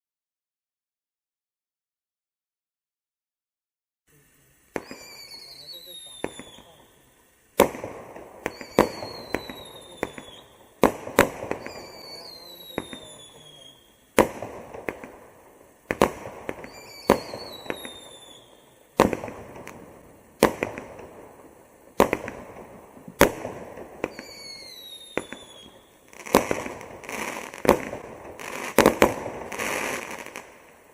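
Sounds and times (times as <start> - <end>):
firework crackling: 4.1 - 30.9
falling firework whistle: 4.7 - 14.5, 15.9 - 19.8, 23.1 - 30.6
firework bangs: 4.7 - 30.9.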